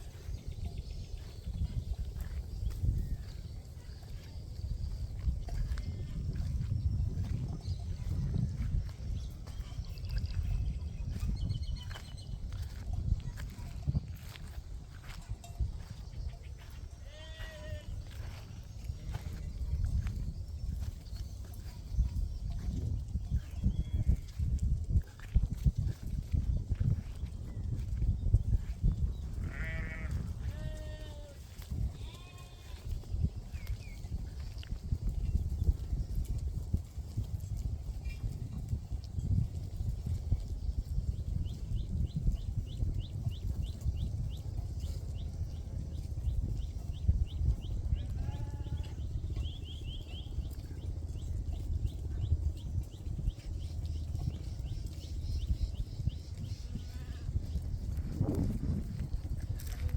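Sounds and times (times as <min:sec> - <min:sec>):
sheep hooves thudding: 0:00.0 - 0:59.9
sheep bleating: 0:17.0 - 0:18.0, 0:29.4 - 0:31.4, 0:32.0 - 0:32.8, 0:48.1 - 0:49.0.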